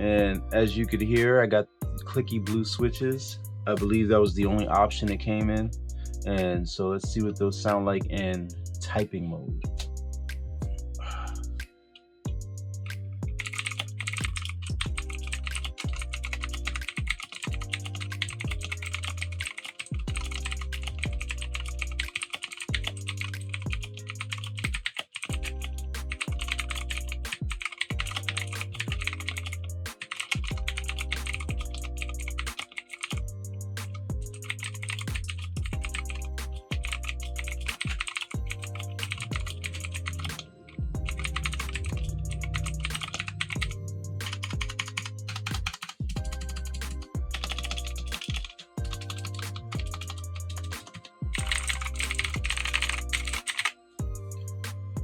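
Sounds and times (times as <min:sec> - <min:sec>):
background music with bass: 0:00.0 - 0:55.0
mechanical keyboard typing: 0:13.3 - 0:33.2, 0:33.8 - 0:40.4, 0:41.1 - 0:53.8.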